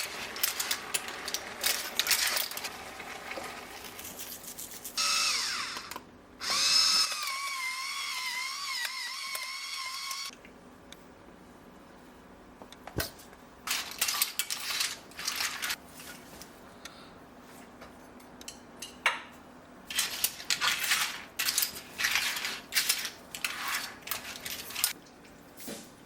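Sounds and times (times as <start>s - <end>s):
dishes scraping and clattering: 19.9s - 25.0s.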